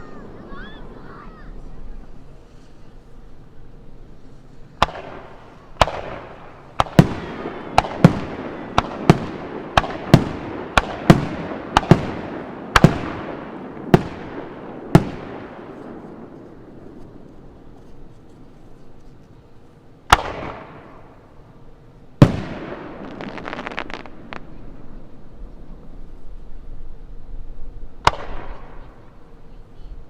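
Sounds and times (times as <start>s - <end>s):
aerial fireworks bangs: 4.8s - 16.4s, 22.2s - 24.4s.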